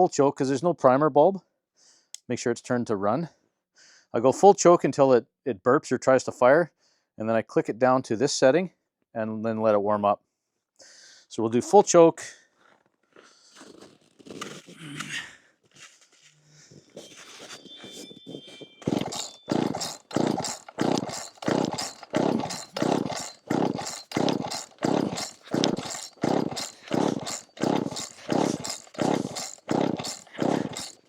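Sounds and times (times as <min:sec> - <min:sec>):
chainsaw starter cord cranking: 0:18.8 - 0:31.0.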